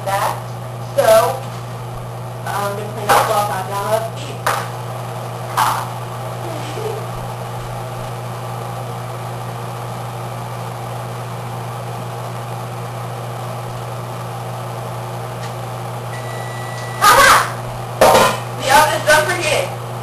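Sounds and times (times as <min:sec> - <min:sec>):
air conditioner humming: 0:00.0 - 0:20.0
faint high electronic beep: 0:16.1 - 0:17.1.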